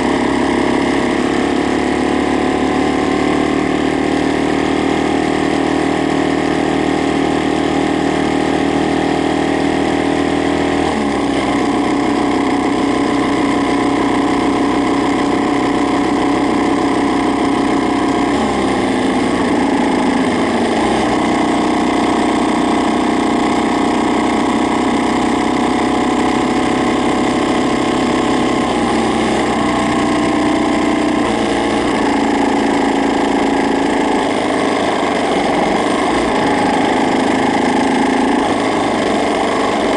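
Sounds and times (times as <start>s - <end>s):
motorcycle engine idling: 0.0s - 8.7s, 9.5s - 39.9s.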